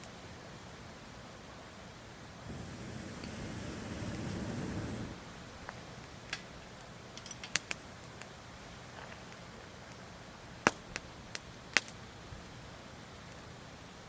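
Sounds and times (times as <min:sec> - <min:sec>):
campfire crackling: 0:00.0 - 0:14.0
faint steady hiss: 0:00.0 - 0:14.0.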